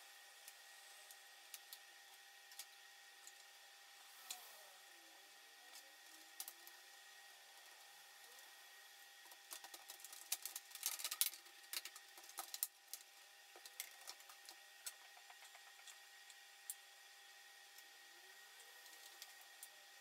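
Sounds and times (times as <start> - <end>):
laptop parts clicking and rattling: 9.2 - 16.0.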